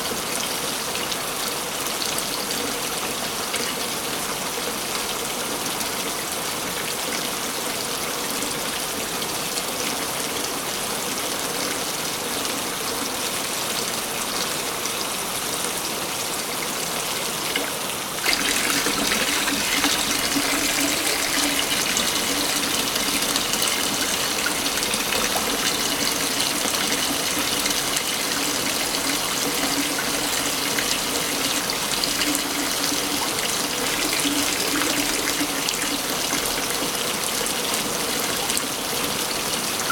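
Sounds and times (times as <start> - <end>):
waterfall rushing water: 16.3 - 37.6.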